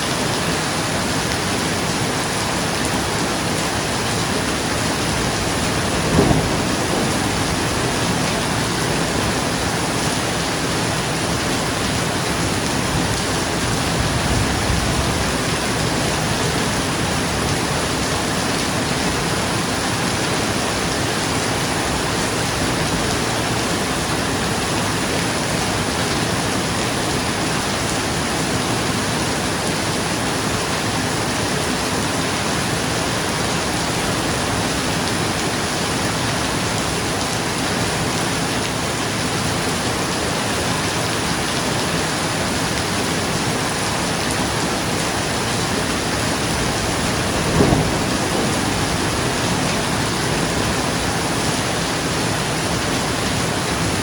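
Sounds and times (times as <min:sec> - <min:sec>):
dense rain on a roof: 0:00.0 - 0:54.0
thunder clap: 0:04.9 - 0:10.8, 0:45.3 - 0:51.9.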